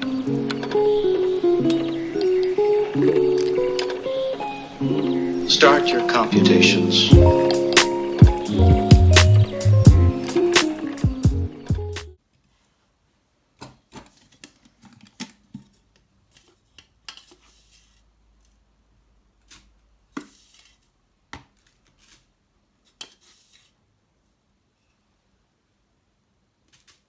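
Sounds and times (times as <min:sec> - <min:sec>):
music: 0:00.0 - 0:12.2
small objects being handled: 0:13.6 - 0:18.7, 0:19.4 - 0:23.8, 0:26.6 - 0:27.0.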